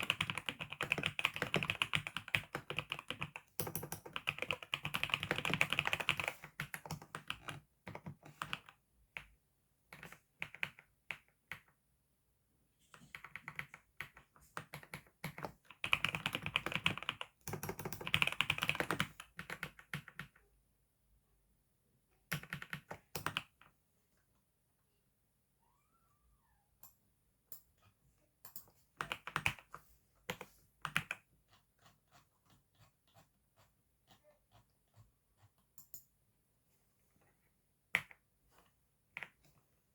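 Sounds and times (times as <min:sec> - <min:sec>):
typing on keyboard: 0:00.0 - 0:09.3, 0:09.9 - 0:11.8, 0:13.0 - 0:20.5, 0:22.3 - 0:23.8, 0:28.4 - 0:31.3.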